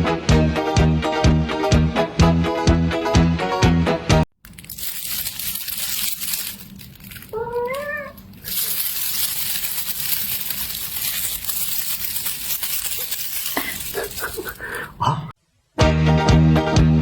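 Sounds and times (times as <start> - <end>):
kitten meowing: 7.3 - 8.3.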